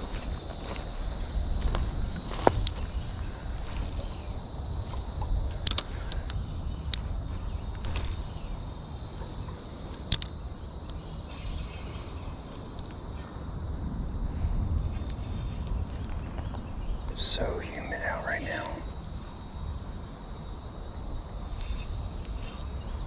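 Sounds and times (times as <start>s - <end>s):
insects droning: 0.0s - 23.0s
wind rumbling on microphone: 0.0s - 23.0s.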